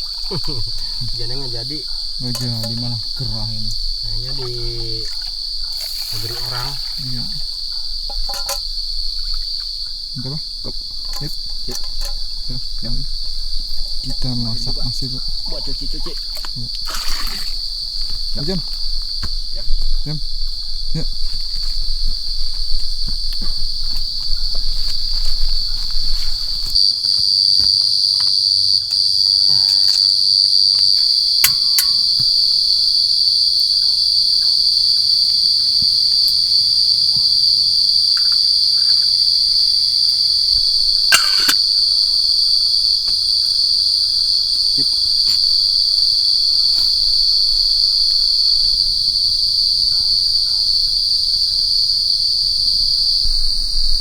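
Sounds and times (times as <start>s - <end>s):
insects droning: 0.0s - 54.0s
small clicks and knocks: 8.1s - 8.7s.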